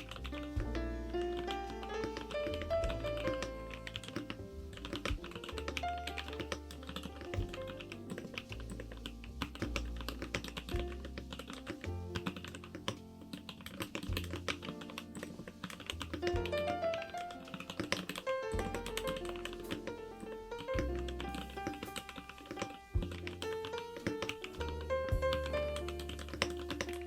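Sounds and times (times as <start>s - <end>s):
background music with bass: 0.0s - 13.3s, 13.9s - 16.9s, 18.4s - 27.0s
mechanical keyboard typing: 1.2s - 10.7s, 11.3s - 20.0s.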